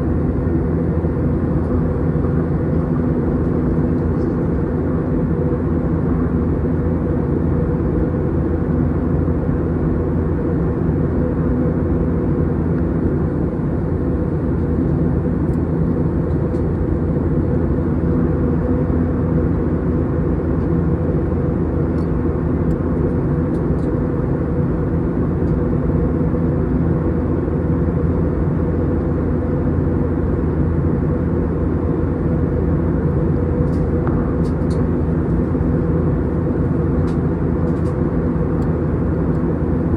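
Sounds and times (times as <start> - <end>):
airplane cabin engine drone: 0.0 - 39.9.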